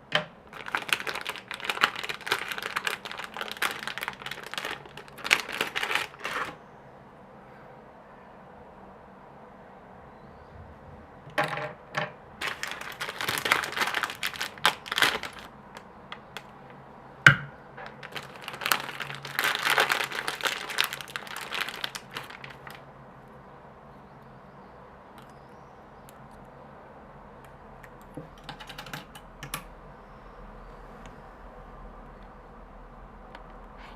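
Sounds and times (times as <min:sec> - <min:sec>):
packaging rustling: 0:00.5 - 0:06.6, 0:12.4 - 0:16.7, 0:17.8 - 0:22.8.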